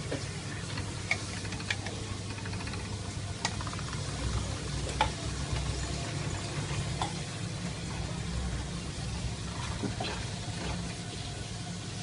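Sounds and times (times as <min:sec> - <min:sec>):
steady low hum: 0:00.0 - 0:12.0
utensil clicking against pan: 0:00.8 - 0:04.1.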